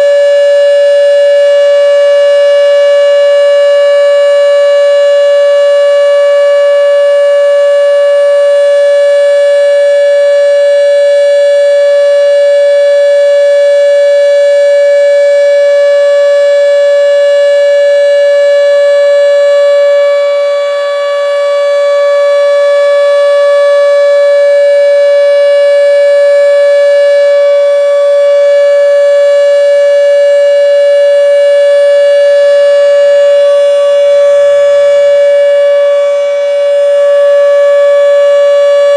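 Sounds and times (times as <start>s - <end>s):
steady warning siren tone: 0.0s - 38.9s.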